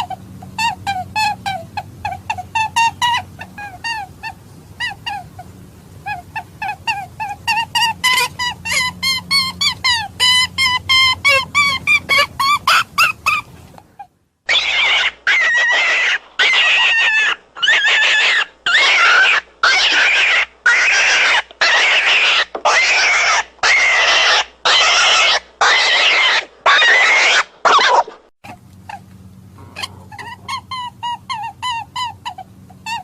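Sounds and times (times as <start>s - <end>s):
raspy rabbit screams: 6.1s - 13.5s, 14.5s - 28.1s.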